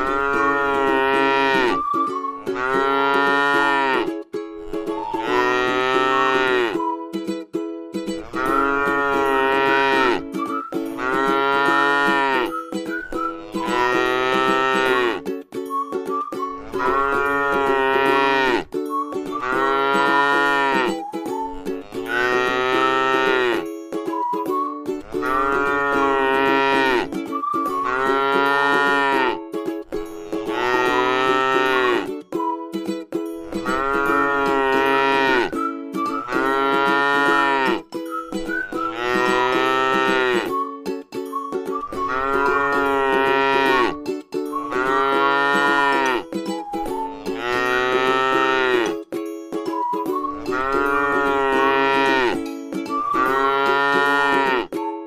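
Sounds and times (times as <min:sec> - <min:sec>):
cow mooing: 0:00.0 - 0:01.8, 0:02.6 - 0:04.1, 0:05.1 - 0:06.8, 0:08.2 - 0:10.2, 0:11.0 - 0:12.5, 0:13.4 - 0:15.2, 0:16.6 - 0:18.7, 0:19.4 - 0:20.9, 0:21.8 - 0:23.6, 0:25.1 - 0:27.1, 0:27.8 - 0:29.4, 0:30.3 - 0:32.1, 0:33.6 - 0:35.5, 0:36.3 - 0:37.8, 0:38.9 - 0:40.5, 0:42.0 - 0:44.0, 0:44.7 - 0:46.2, 0:47.0 - 0:49.0, 0:50.5 - 0:52.4, 0:53.1 - 0:54.7.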